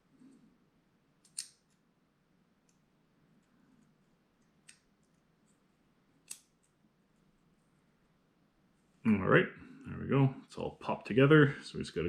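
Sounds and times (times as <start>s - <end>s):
folding knife parts clicking: 1.2s - 1.8s, 6.2s - 6.5s.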